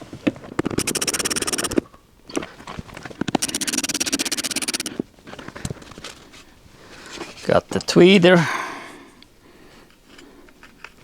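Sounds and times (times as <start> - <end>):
ratchet wrench clicking: 0.7 - 1.8, 3.4 - 5.0.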